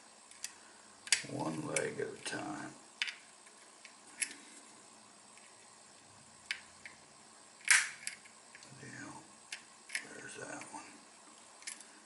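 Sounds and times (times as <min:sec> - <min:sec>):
small metal clicks: 0:11.6 - 0:11.9.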